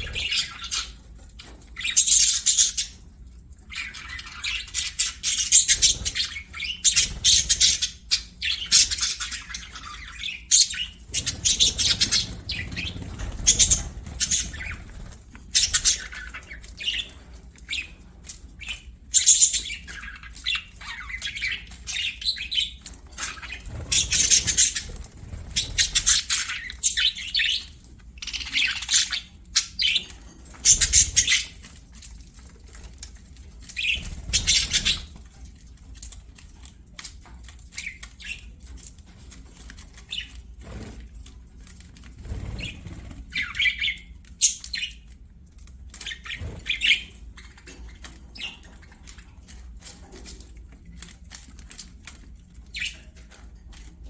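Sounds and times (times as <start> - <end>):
budgerigars chirping and squawking: 0.0 - 54.0.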